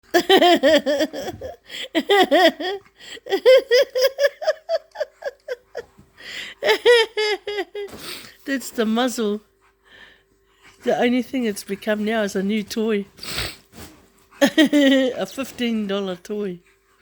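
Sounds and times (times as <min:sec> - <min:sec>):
person laughing hard: 0:00.1 - 0:08.0.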